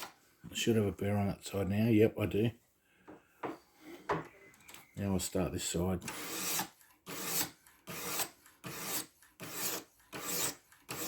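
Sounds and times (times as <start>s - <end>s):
sharpening stone rasping on knife blade: 6.1s - 11.0s.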